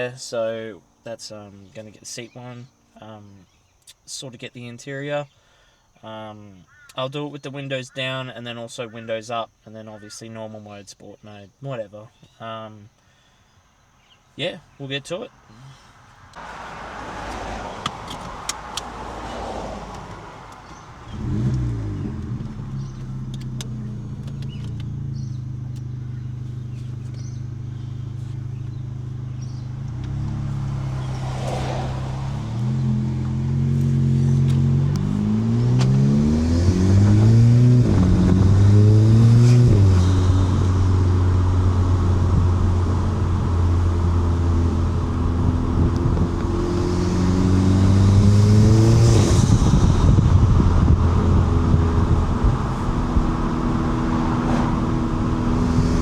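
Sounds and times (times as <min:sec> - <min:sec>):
car engine accelerating: 0:16.2 - 0:56.0.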